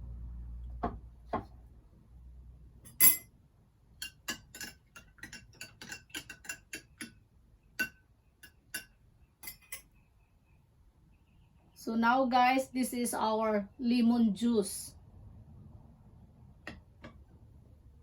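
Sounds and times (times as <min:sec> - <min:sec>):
spoon clinking glass: 0:02.9 - 0:03.3, 0:04.0 - 0:07.1, 0:07.8 - 0:09.9.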